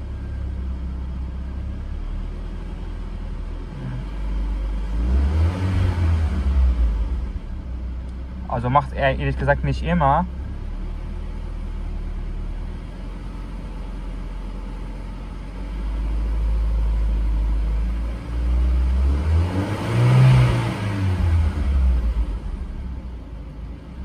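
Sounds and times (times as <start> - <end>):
car engine idling and revving: 0.0 - 24.0.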